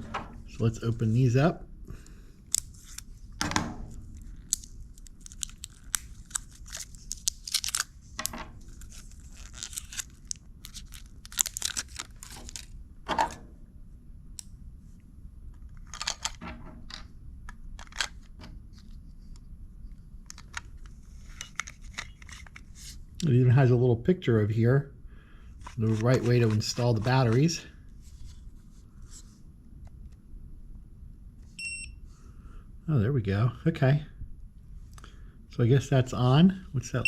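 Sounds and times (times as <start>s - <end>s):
packaging tearing and crinkling: 4.1s - 8.0s, 8.7s - 12.8s, 25.6s - 27.5s.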